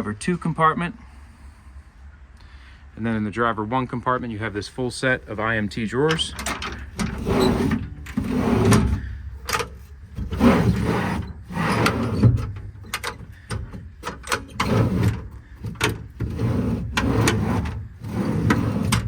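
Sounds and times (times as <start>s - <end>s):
drawers sliding open and shut: 6.0s - 19.0s.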